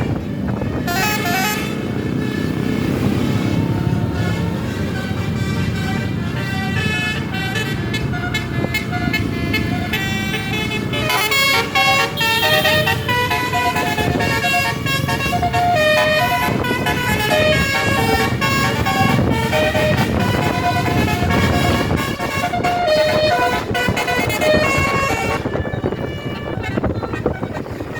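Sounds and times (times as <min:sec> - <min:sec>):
bus engine: 0:00.0 - 0:27.9
multi-tone bus horn melody: 0:00.0 - 0:27.9
traffic rumble: 0:00.0 - 0:27.9.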